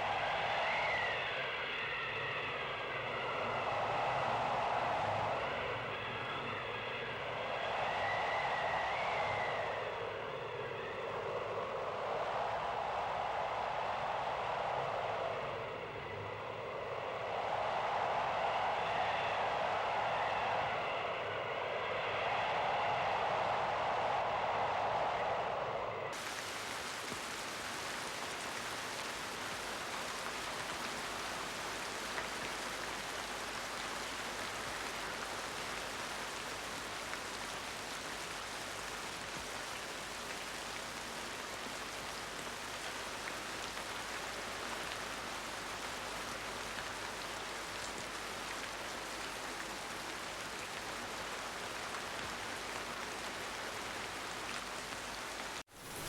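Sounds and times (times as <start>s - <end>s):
heavy rain falling: 26.2s - 56.0s.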